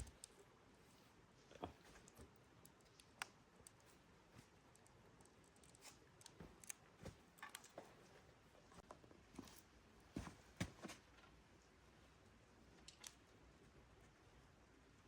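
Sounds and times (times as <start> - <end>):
faint clicks and light taps: 1.5 - 8.0.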